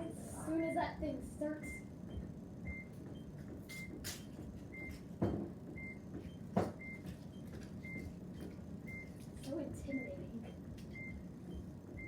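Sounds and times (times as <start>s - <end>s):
alarm base station short beeps: 9.9s - 10.2s.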